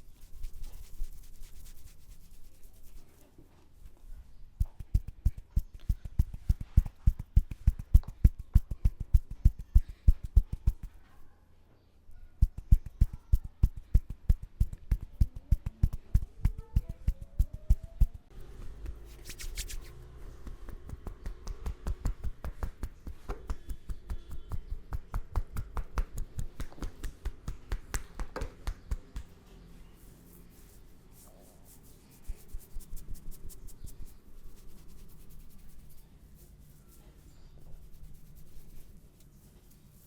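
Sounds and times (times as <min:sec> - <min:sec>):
hands tapping a head: 0:04.6 - 0:11.0, 0:12.4 - 0:29.4.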